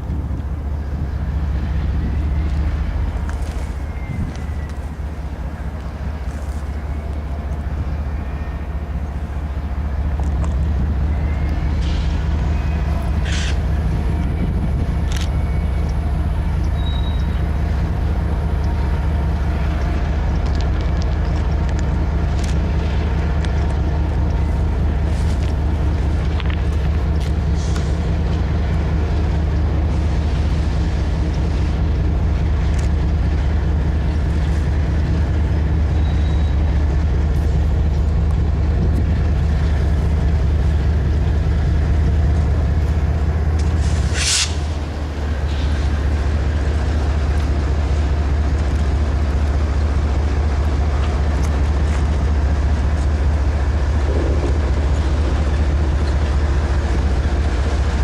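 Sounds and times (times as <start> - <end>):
vehicle engine rumble: 0.0 - 58.0
short hiss: 43.8 - 44.7.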